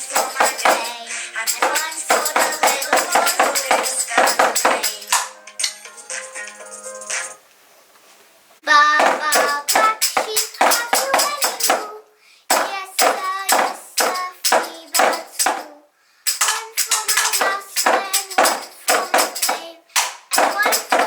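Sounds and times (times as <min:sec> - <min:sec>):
tambourine-like jingles: 0:00.0 - 0:05.2, 0:09.0 - 0:11.9, 0:12.5 - 0:21.0
lively music with quick notes: 0:00.0 - 0:07.4.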